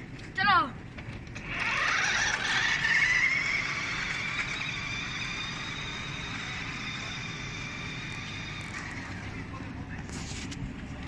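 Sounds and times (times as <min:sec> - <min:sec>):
toy car electric motor whine: 0:01.4 - 0:09.5.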